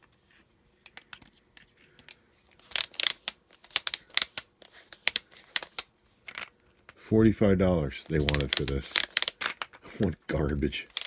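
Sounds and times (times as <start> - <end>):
hard plastic parts clicking: 1.9 - 7.0, 8.0 - 9.9.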